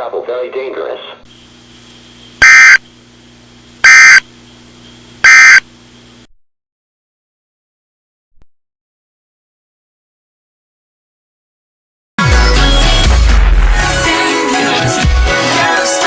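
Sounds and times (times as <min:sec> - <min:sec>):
low hum and hiss: 0:00.0 - 0:06.3
digital data bursts: 0:02.4 - 0:02.8, 0:03.8 - 0:04.2, 0:05.2 - 0:05.6.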